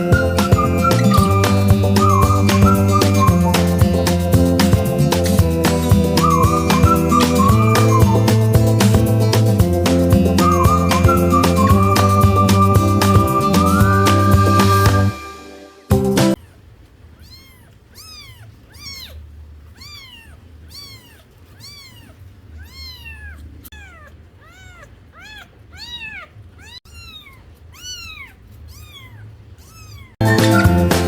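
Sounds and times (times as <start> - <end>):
cat meowing: 16.4 - 30.2.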